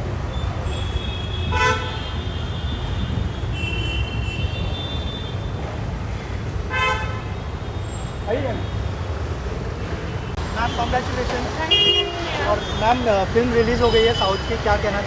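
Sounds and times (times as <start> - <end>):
road traffic rumble: 0.0 - 15.0
vehicle horns honking: 0.6 - 5.5, 6.7 - 7.4, 10.2 - 13.1, 13.8 - 14.6.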